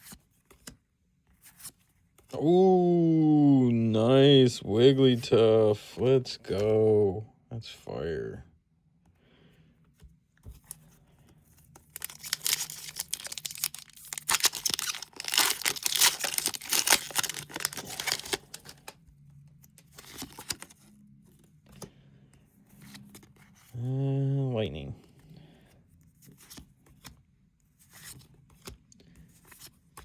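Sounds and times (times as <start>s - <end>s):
foil wrapper tearing and crinkling: 11.9s - 19.0s, 20.0s - 20.7s.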